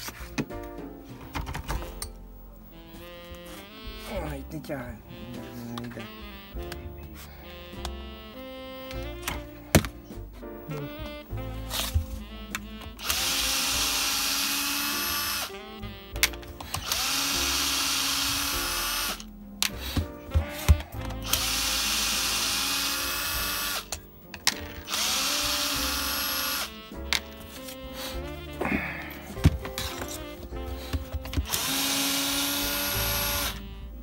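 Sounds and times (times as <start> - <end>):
small power tool motor: 12.9 - 15.5, 16.6 - 19.2, 19.9 - 24.0, 24.9 - 26.8, 30.9 - 33.6.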